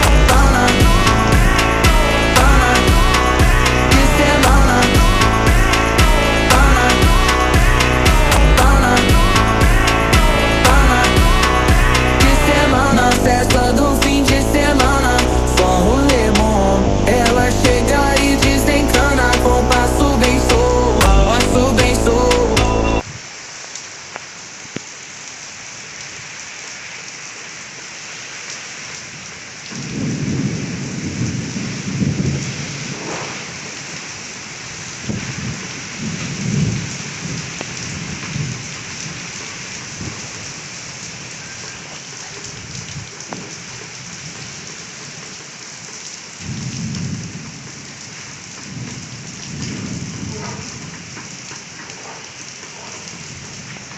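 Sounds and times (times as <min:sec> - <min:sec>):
thunder rumbling: 0:00.0 - 0:21.4, 0:29.7 - 0:34.3, 0:35.0 - 0:38.7, 0:48.6 - 0:51.7
heavy rain: 0:00.0 - 0:53.9.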